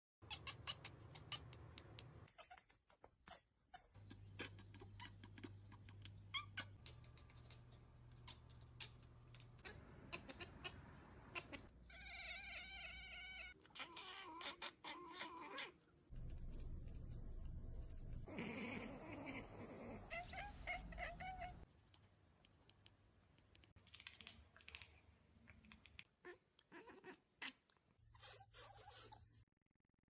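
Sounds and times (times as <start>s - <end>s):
cat meowing: 0.2s - 1.5s, 8.2s - 15.8s, 18.3s - 21.6s
low hum: 16.1s - 18.3s.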